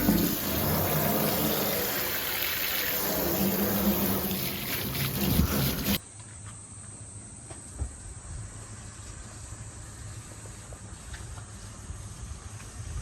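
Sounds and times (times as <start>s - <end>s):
running water rushing: 0.0s - 6.0s
quiet outdoor background: 0.0s - 13.0s.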